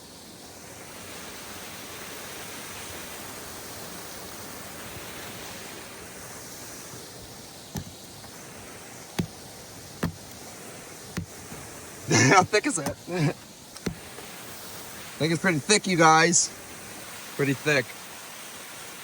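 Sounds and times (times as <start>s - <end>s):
waterfall rushing: 0.0s - 19.0s
short knocks: 7.7s - 8.1s, 9.2s - 10.4s, 13.8s - 14.1s.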